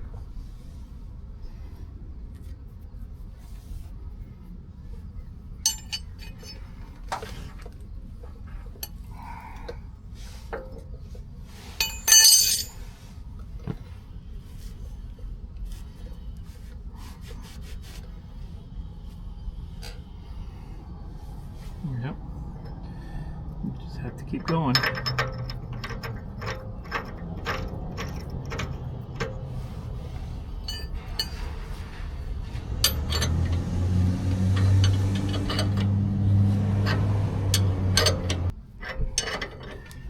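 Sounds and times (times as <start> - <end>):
ringing metal clank: 5.7 - 6.2, 11.8 - 12.8, 24.5 - 38.5
steady low hum: 18.0 - 38.8.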